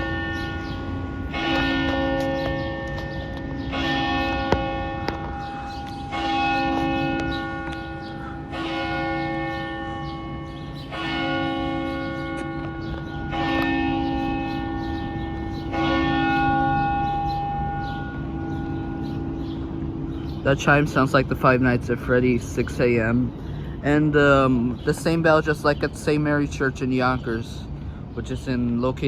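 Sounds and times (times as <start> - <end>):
church bell striking: 0.0 - 21.8.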